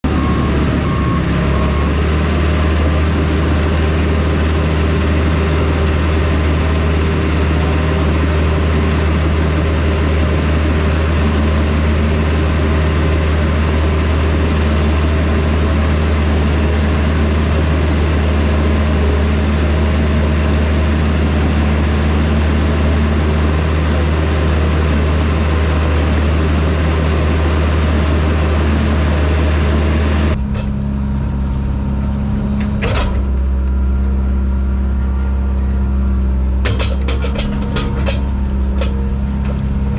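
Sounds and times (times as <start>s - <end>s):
diesel engine droning: 0.0s - 39.9s.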